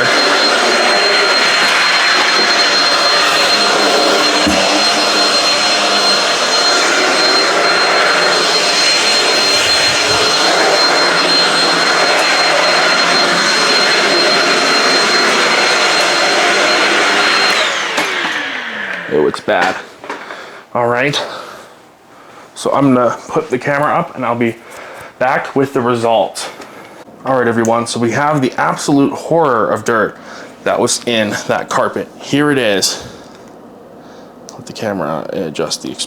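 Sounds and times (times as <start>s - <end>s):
stick vacuum motor whining: 0.0s - 20.3s.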